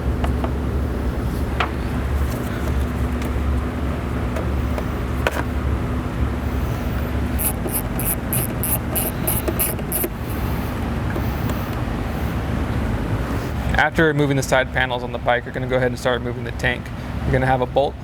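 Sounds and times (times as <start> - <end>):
steady low hum: 0.0 - 13.9
ratchet clicking: 7.3 - 10.4
hand tool clicks: 7.4 - 10.2.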